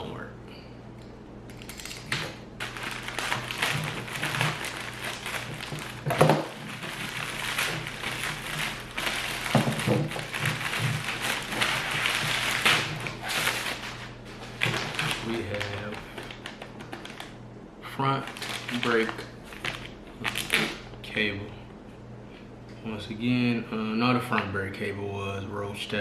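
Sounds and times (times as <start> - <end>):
packaging rustling and crinkling: 1.6 - 17.4, 18.1 - 20.8.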